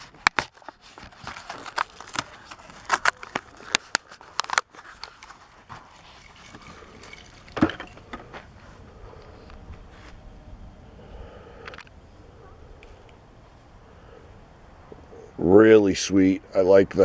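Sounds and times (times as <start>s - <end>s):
plastic packaging cracking: 0.0s - 8.4s
packaging rustling: 0.0s - 10.2s.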